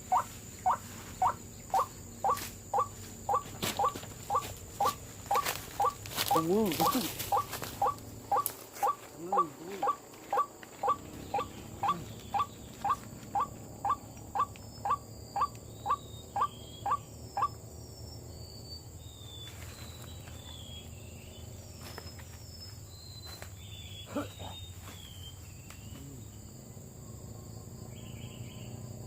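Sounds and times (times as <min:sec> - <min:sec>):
waterhen calling: 0:00.0 - 0:17.6
faint high chirps: 0:00.0 - 0:20.8.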